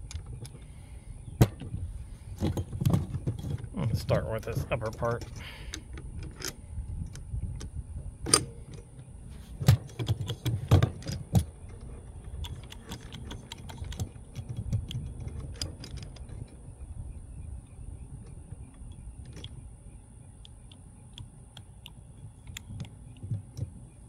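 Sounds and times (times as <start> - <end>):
metallic clicks and knocks: 9.6 - 16.6
low rumble: 14.2 - 21.1.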